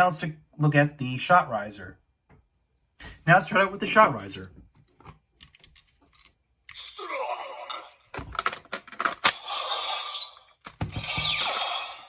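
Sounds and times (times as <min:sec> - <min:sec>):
plastic toy clicks: 0:08.1 - 0:09.5, 0:10.6 - 0:12.0
electronic toy sound effects: 0:09.4 - 0:12.0.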